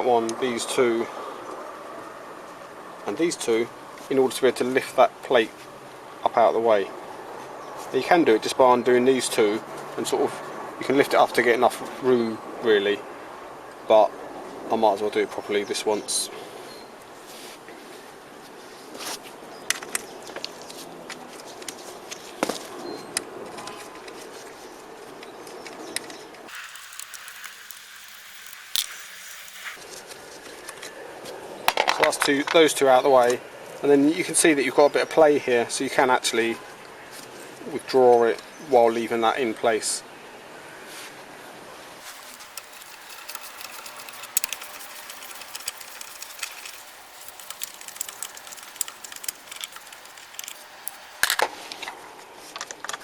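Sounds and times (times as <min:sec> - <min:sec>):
hand tools clicking on bolts: 0:26.5 - 0:29.8, 0:42.0 - 0:51.3
steady background hiss: 0:26.5 - 0:30.2.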